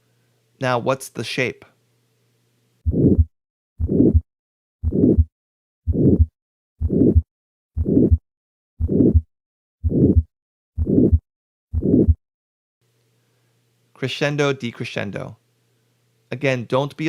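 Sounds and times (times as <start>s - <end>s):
harsh heart murmur: 2.9s - 5.3s, 5.9s - 8.2s, 8.8s - 12.2s
heartbeat through stethoscope: 2.9s - 5.3s, 5.9s - 8.2s, 8.8s - 12.2s.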